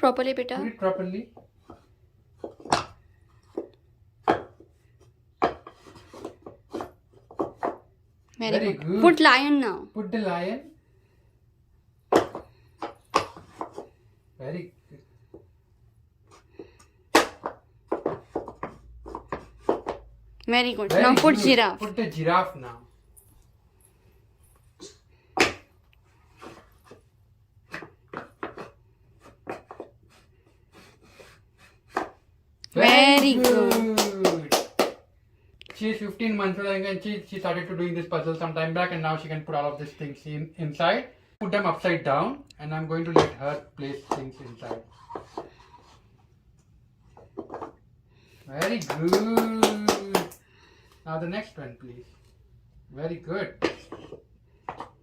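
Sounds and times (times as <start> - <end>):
wooden puzzle pieces knocking: 1.4 - 7.9, 12.1 - 14.0, 16.6 - 20.2, 27.7 - 30.0, 47.2 - 47.8, 53.6 - 55.0
wooden puzzle piece tapping board: 17.1 - 20.1.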